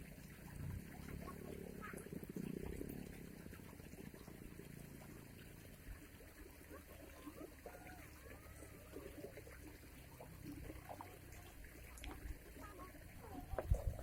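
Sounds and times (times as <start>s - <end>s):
faint trickling water: 0.0s - 14.0s.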